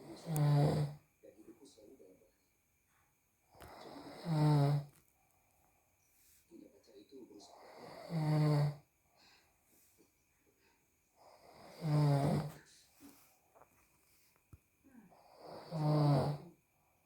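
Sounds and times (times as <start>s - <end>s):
man snoring: 0.0s - 1.0s, 3.6s - 4.9s, 7.5s - 8.8s, 11.2s - 12.6s, 15.1s - 16.6s
quiet breathing: 0.0s - 17.0s.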